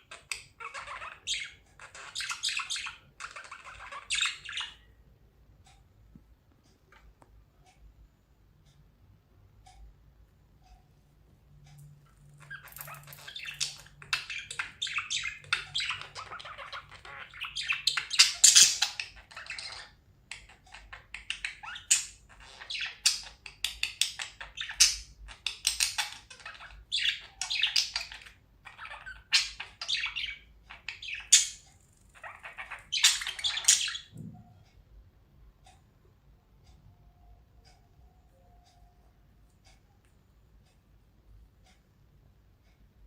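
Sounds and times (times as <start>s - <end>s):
budgerigars chirping: 0.0s - 4.9s, 12.3s - 34.2s.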